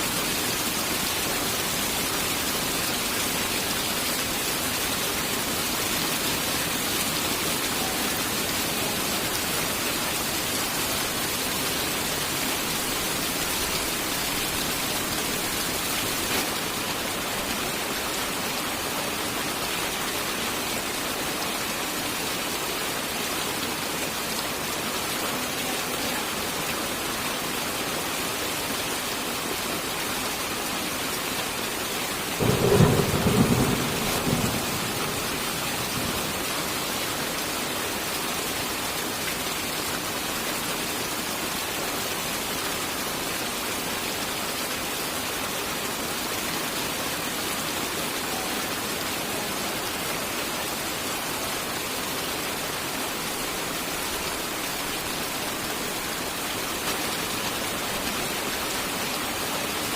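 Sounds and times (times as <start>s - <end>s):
heavy rain hissing: 0.0s - 59.9s
thunder rumble: 32.4s - 36.4s.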